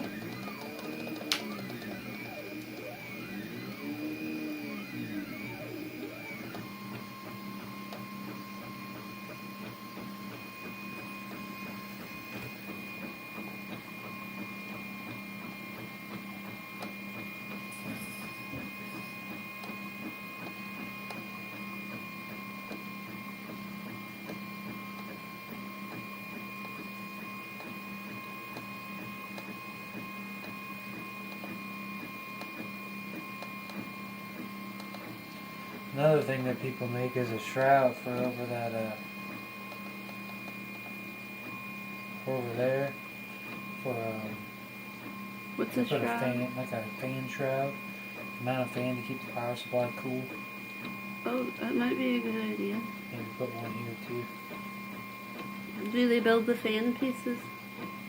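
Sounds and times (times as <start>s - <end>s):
stepper motors whining: 0.0s - 23.4s, 42.3s - 58.0s.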